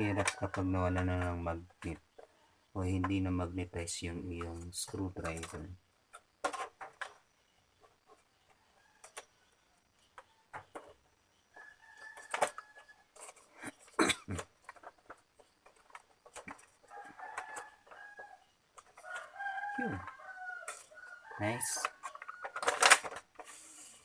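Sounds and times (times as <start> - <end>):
clicks and knocks of plastic parts: 0.0 - 3.6, 4.2 - 23.9
rooster crowing: 16.8 - 22.7.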